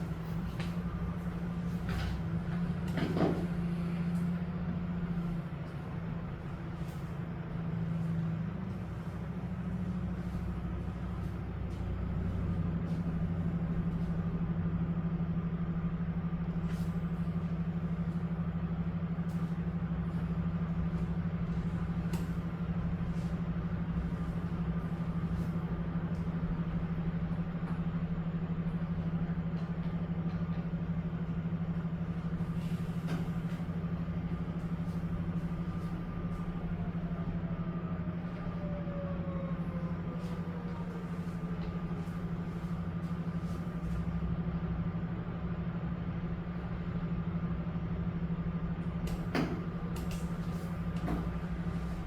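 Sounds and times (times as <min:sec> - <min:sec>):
low mechanical hum: 0:00.0 - 0:52.0.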